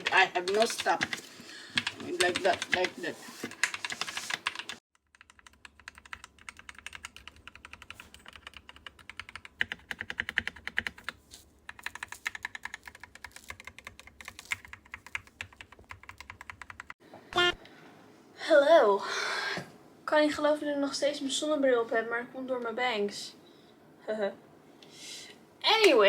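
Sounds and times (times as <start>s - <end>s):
fast mechanical keyboard typing: 0.0s - 17.0s.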